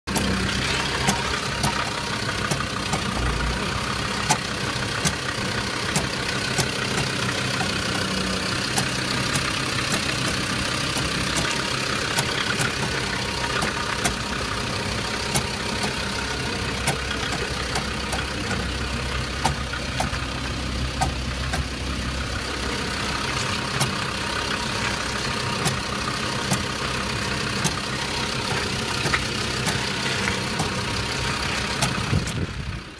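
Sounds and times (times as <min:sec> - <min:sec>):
car engine idling: 0:00.0 - 0:32.9
sharp clicks or knocks: 0:21.0 - 0:21.7.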